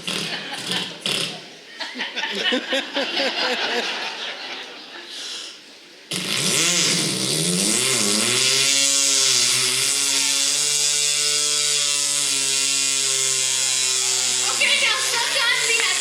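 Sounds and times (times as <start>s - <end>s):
imitated chainsaw drone: 6.1s - 16.0s.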